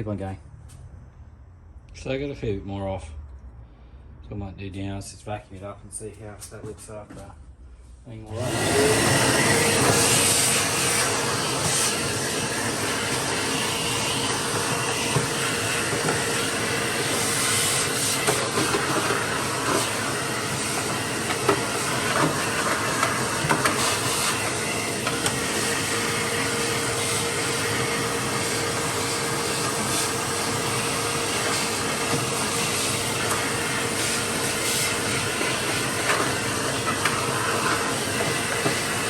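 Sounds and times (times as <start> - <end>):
vacuum cleaner humming: 8.3 - 39.0.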